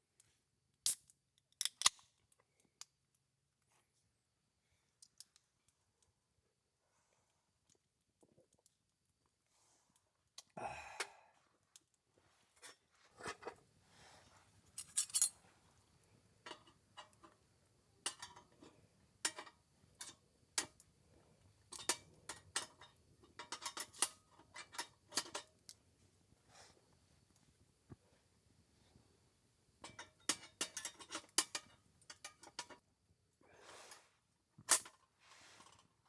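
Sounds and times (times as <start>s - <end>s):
metallic clinks and knocks: 14.7s - 15.4s.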